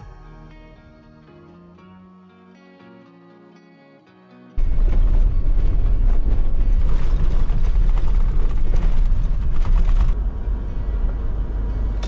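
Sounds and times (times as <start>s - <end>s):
creaking and rattling: 4.6s - 12.0s
vehicle driving on dirt track: 4.6s - 12.0s.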